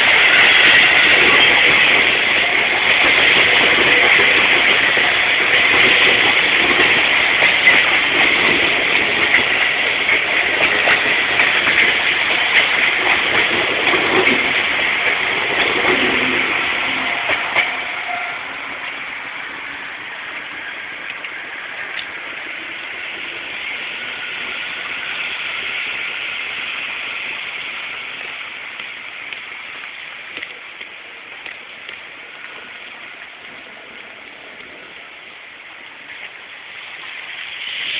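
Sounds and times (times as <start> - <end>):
passing traffic rushing: 0.0 - 28.1.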